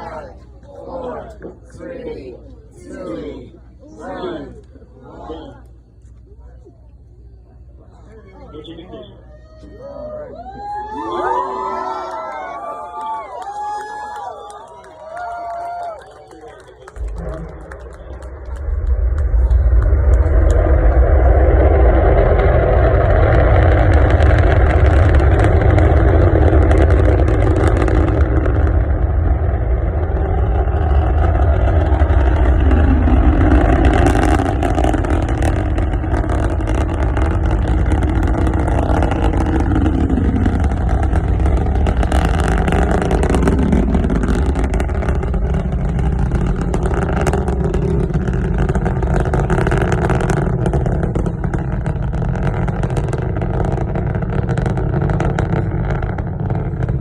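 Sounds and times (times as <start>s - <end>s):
rocket engine rumble: 10.5s - 57.0s
rocket engine crackling: 16.4s - 57.0s.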